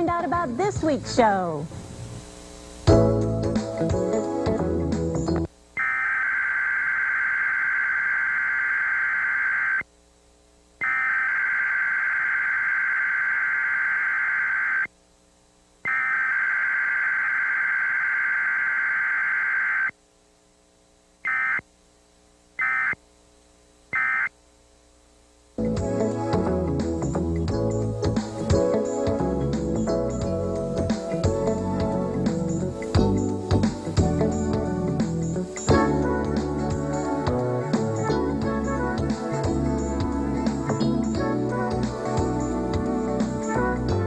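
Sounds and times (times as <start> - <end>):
high buzzing data tone: 5.5 - 10.0, 10.7 - 15.0, 15.8 - 20.0, 21.2 - 21.8, 22.6 - 23.1, 23.9 - 24.4
short blips: 5.8 - 9.9, 10.8 - 14.9, 15.8 - 20.0, 21.2 - 21.7, 22.6 - 23.0, 23.9 - 24.4.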